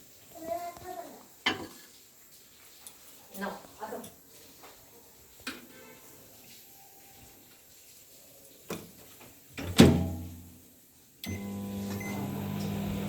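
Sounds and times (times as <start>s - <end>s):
microwave oven humming: 11.2s - 13.0s.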